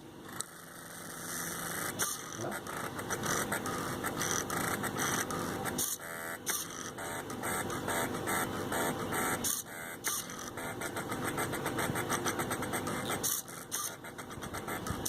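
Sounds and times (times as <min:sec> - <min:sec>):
stepper motors buzzing whine: 0:00.0 - 0:15.0.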